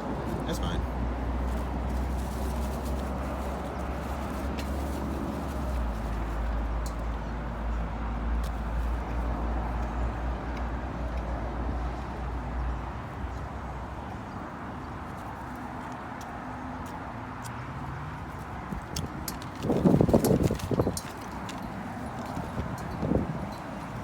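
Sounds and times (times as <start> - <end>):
wind buffeting microphone: 18.4 - 24.0.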